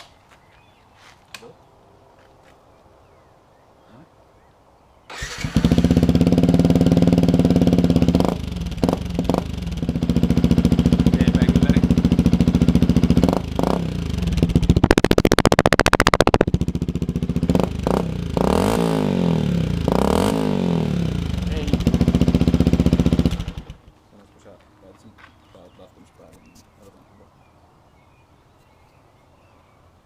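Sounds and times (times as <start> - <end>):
motorcycle engine revving: 5.1 - 23.9.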